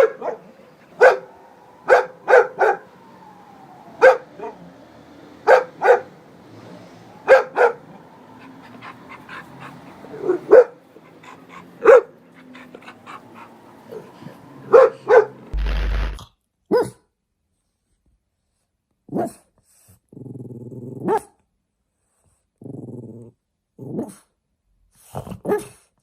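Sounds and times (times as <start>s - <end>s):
dog barking: 0.0s - 3.0s, 4.0s - 4.6s, 5.4s - 6.2s, 7.2s - 15.4s, 16.7s - 17.0s, 19.1s - 19.4s, 21.0s - 21.3s, 25.4s - 25.8s.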